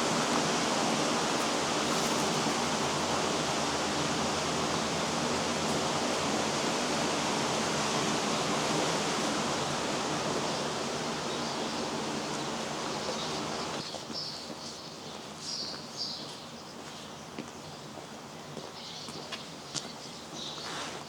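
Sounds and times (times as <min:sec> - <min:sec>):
river water rushing: 0:00.0 - 0:13.8.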